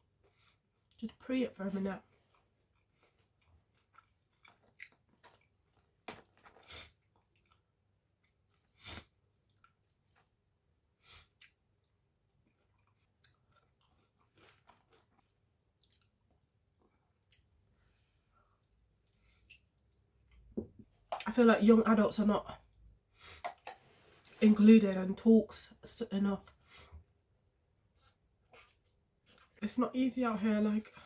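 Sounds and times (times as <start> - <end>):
person chewing food: 2.1 - 10.4, 11.0 - 21.2, 23.2 - 24.4.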